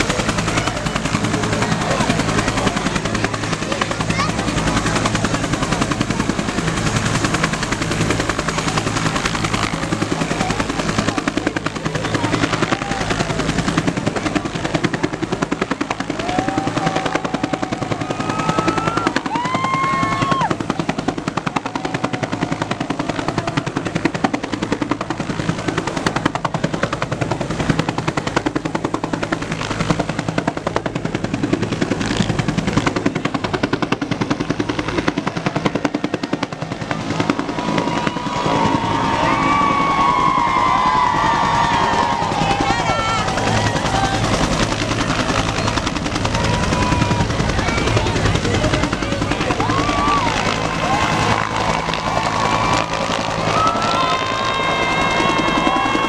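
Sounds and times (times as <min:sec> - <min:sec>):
helicopter rotor beating: 0:00.0 - 0:56.0.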